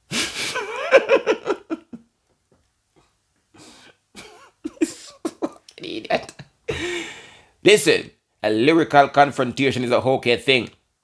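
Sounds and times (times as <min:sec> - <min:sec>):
man laughing breathily: 0:00.1 - 0:02.1, 0:03.6 - 0:05.6, 0:06.7 - 0:07.4.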